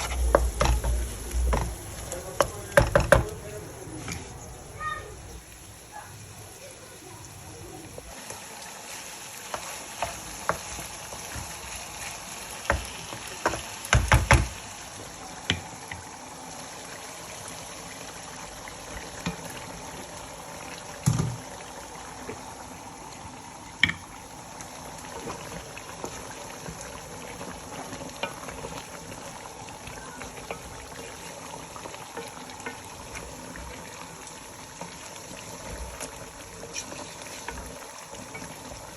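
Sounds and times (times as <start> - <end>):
food hissing in a pan: 0.0 - 38.9
utensil knocking against pan: 2.4 - 3.3.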